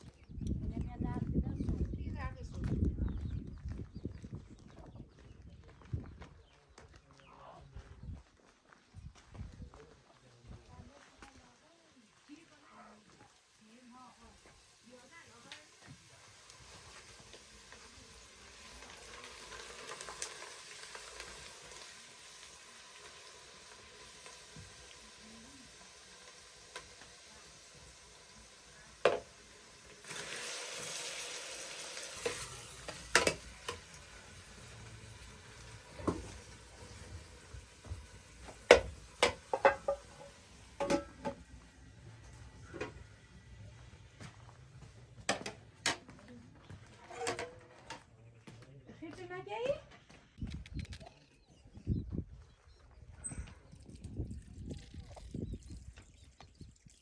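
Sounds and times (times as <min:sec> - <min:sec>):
food sizzling in a pan: 0:11.1 - 0:44.5
utensils knocking against pots: 0:29.0 - 0:29.3, 0:32.2 - 0:34.0, 0:38.4 - 0:41.5.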